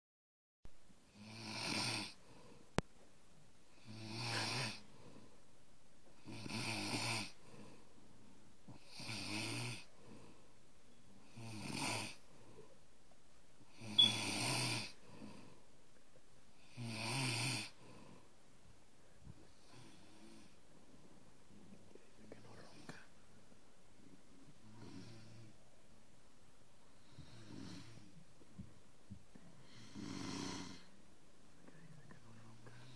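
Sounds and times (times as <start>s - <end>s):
person snoring: 1.1s - 2.3s, 3.7s - 5.2s, 6.2s - 7.8s, 8.7s - 10.3s, 11.2s - 12.3s, 13.7s - 15.6s, 16.6s - 18.2s, 27.0s - 28.1s, 29.6s - 30.9s.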